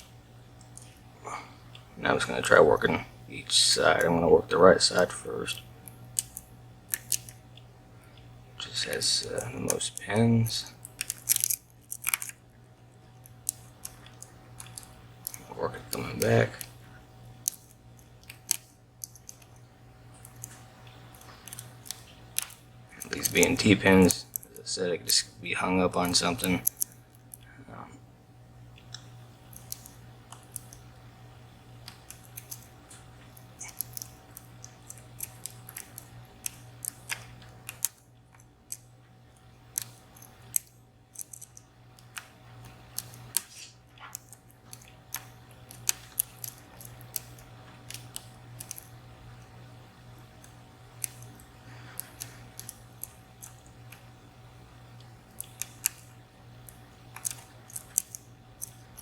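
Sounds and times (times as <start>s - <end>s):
steady low hum: 0.0s - 59.0s
lock pick clicking on pins: 39.7s - 42.2s.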